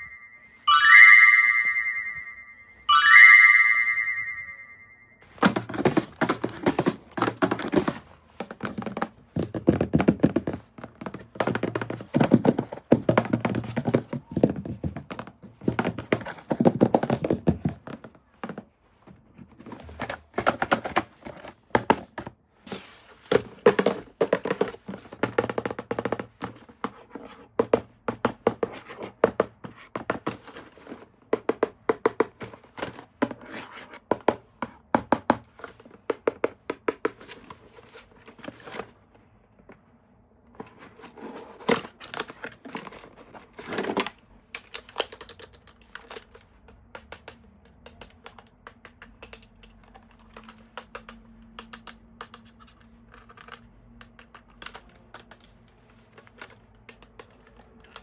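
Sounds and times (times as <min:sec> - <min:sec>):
toy packaging clicks and taps: 0:23.3 - 0:33.4, 0:41.6 - 0:58.0.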